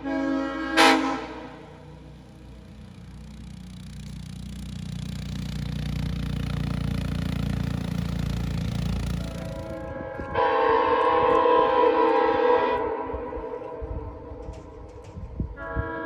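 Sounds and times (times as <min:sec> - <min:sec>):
diesel locomotive rumble: 0:00.0 - 0:16.0.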